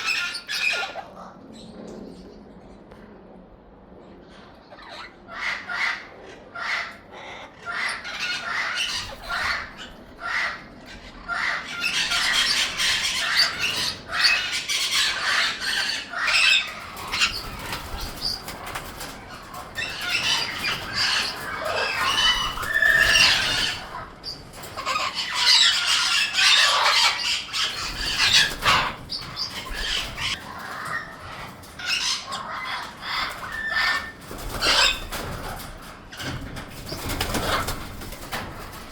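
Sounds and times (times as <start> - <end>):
parrots making raspy calls: 0.0 - 1.5, 4.3 - 38.8
wings flapping and rustling: 11.9 - 38.9.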